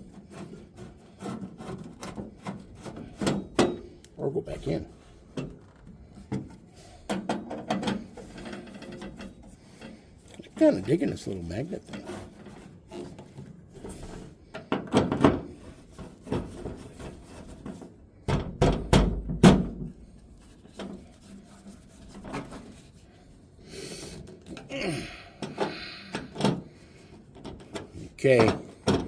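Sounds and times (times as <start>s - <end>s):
hand tools clicking and knocking: 0.1s - 4.2s, 5.3s - 10.0s, 24.2s - 29.0s.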